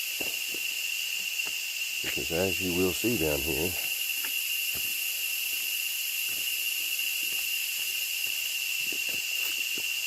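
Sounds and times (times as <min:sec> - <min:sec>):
footsteps on a trail: 0:00.0 - 0:00.7, 0:01.4 - 0:02.3, 0:04.0 - 0:10.0
insect chorus: 0:00.0 - 0:10.0.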